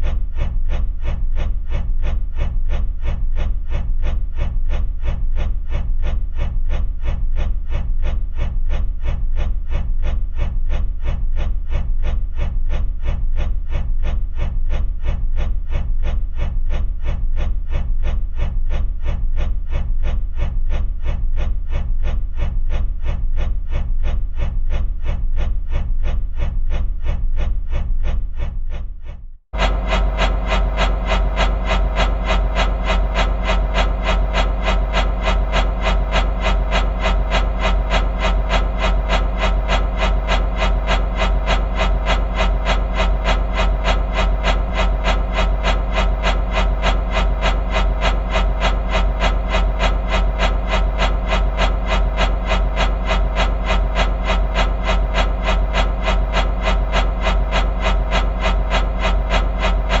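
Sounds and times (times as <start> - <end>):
steady low hum: 0.0 - 60.0
fan blades whooshing: 29.6 - 60.0.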